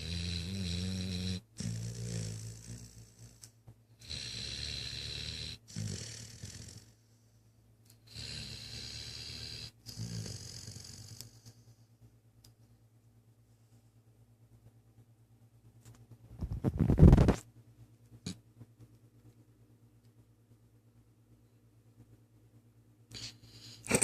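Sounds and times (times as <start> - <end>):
person snoring: 0.0 - 7.0, 8.1 - 11.5
soft breathing: 6.7 - 7.8.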